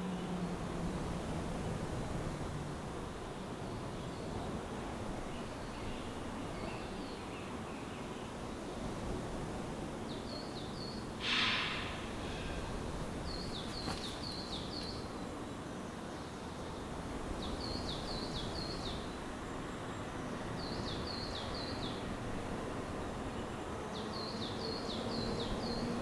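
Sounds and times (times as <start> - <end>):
background hiss: 0.0 - 26.0
brief rushing hiss: 11.2 - 14.4
small bird calling: 11.2 - 15.1.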